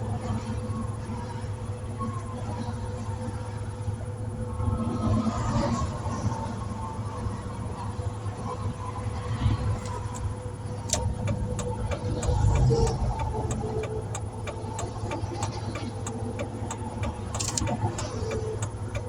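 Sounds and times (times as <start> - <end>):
engine idling: 9.6 - 19.0
vehicle flasher ticking: 9.8 - 19.0.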